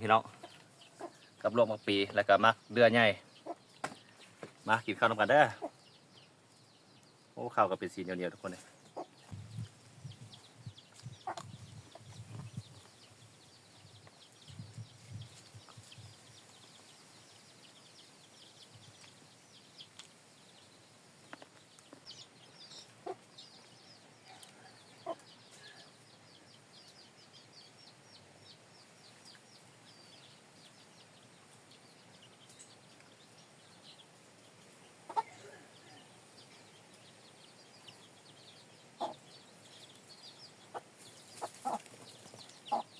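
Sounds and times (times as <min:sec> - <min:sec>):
chickens clucking: 0:00.0 - 0:02.2, 0:03.0 - 0:04.5, 0:05.1 - 0:05.8, 0:08.5 - 0:12.9, 0:22.7 - 0:25.8, 0:34.9 - 0:36.1, 0:38.8 - 0:39.3, 0:39.9 - 0:42.9.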